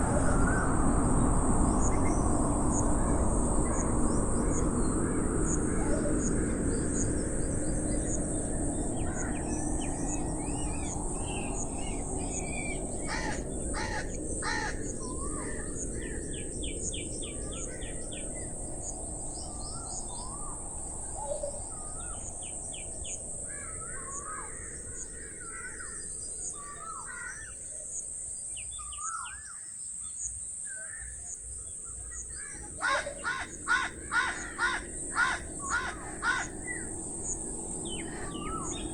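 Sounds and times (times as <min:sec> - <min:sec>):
low rushing noise: 0:00.0 - 0:26.3
high insect drone: 0:00.0 - 0:38.9
small birds chirping: 0:00.0 - 0:38.9
crows cawing: 0:13.0 - 0:16.1, 0:26.6 - 0:27.6, 0:32.4 - 0:38.8.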